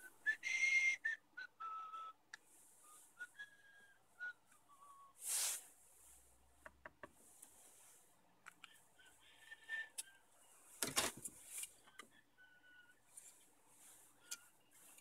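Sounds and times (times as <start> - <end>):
brief hiss: 5.2 - 5.7.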